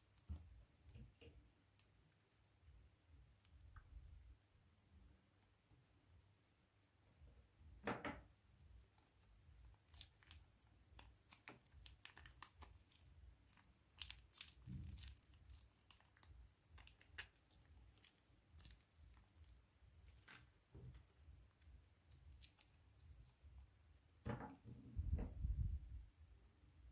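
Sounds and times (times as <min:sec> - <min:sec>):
plastic bags crinkling: 0:09.7 - 0:20.6, 0:22.1 - 0:23.4.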